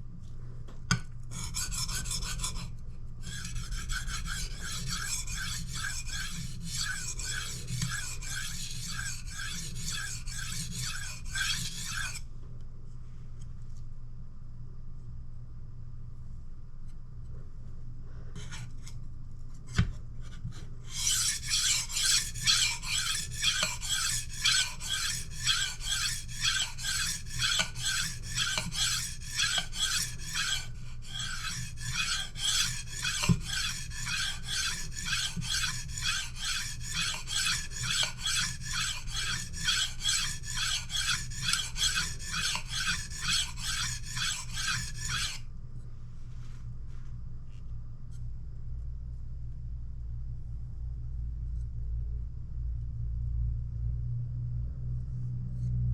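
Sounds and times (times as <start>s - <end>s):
knife scraping on whetstone: 1.3s - 2.7s, 3.3s - 12.2s, 20.9s - 45.4s.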